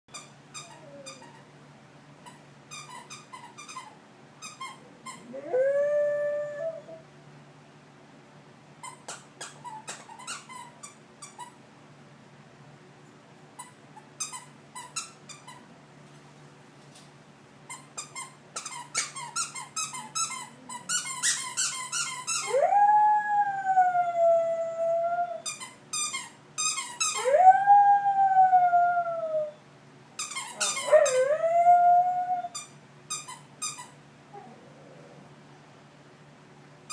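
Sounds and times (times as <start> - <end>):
squeaky toy squeaking: 0.1 - 1.4, 2.2 - 5.3, 8.8 - 11.6, 13.6 - 15.6, 17.7 - 22.5, 25.5 - 27.2, 30.2 - 31.2, 32.5 - 34.0
dog howling: 5.2 - 7.0, 30.5 - 32.6.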